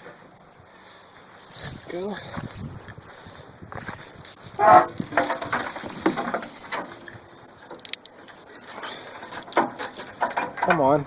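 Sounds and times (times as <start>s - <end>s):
wiring harness scraping: 3.7s - 11.0s.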